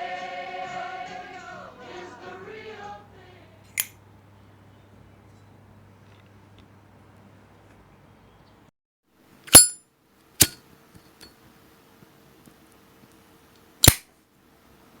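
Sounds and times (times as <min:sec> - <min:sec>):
lighter lid clicking: 0:13.8 - 0:14.0.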